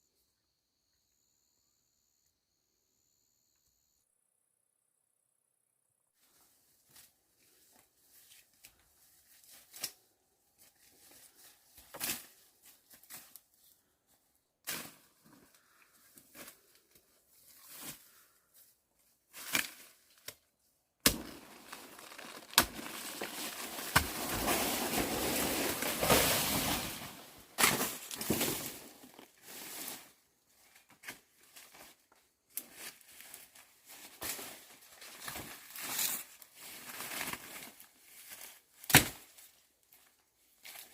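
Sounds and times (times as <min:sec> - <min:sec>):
leaves rustling and snapping: 0:21.0 - 0:29.3.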